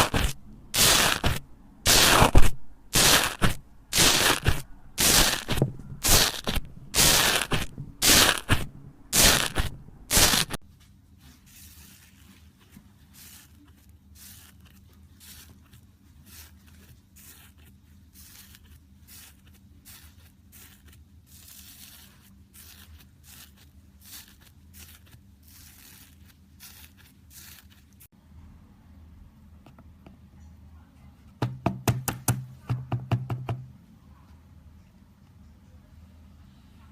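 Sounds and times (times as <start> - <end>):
slime being worked by hand: 0.0 - 10.6, 11.2 - 28.1.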